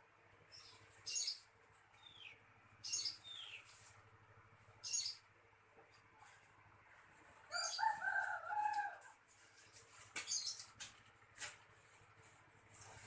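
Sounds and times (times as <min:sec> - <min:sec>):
rooster crowing: 0:07.5 - 0:09.2.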